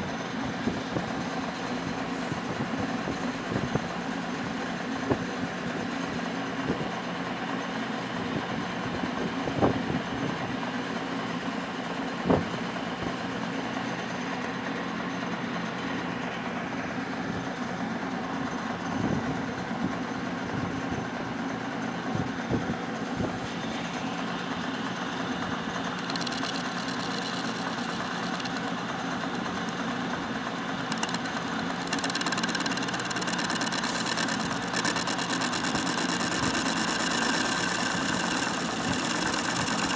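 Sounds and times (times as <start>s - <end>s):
lathe humming: 0.0s - 5.8s, 23.0s - 39.9s
high-pitched machine sound: 25.9s - 39.9s.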